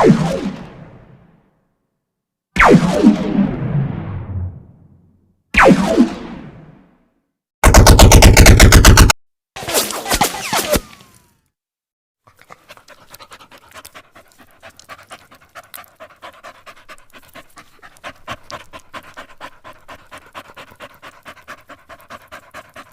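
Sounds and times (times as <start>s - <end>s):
rapid rhythmic panting: 12.3s - 22.9s.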